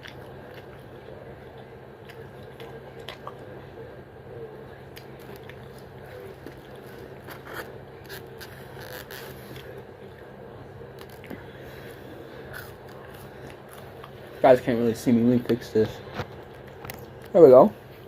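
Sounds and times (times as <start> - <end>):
chewing and biting food: 0.0 - 3.6, 4.8 - 10.2
steady low hum: 0.0 - 18.0.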